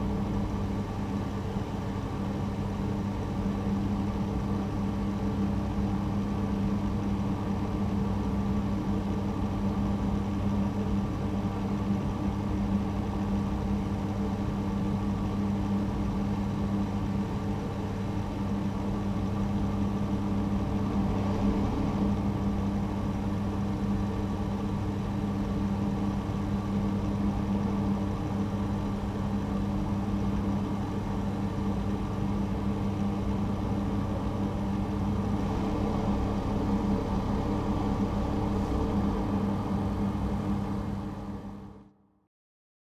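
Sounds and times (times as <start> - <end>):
ventilation system humming: 0.0 - 42.0.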